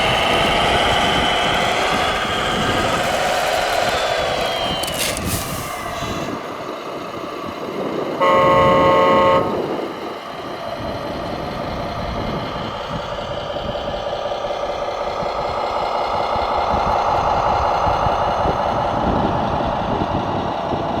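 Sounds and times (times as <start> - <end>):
truck and machine engines running: 0.0 - 21.0
truck horn: 8.2 - 10.1.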